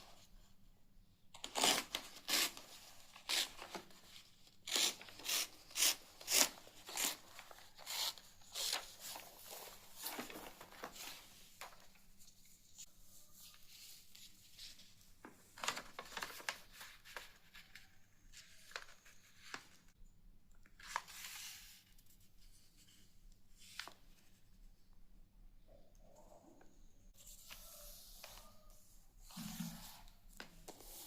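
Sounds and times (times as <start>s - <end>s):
paper folding and crinkling: 1.4s - 19.9s.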